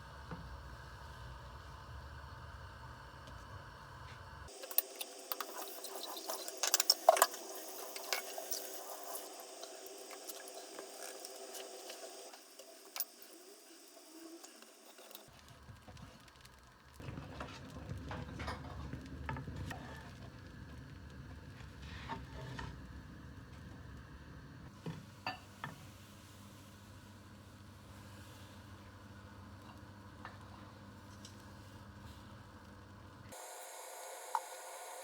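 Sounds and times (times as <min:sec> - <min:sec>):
utensils clicking on a pan: 0:04.5 - 0:15.3
batter crackling in a pan: 0:04.5 - 0:22.9.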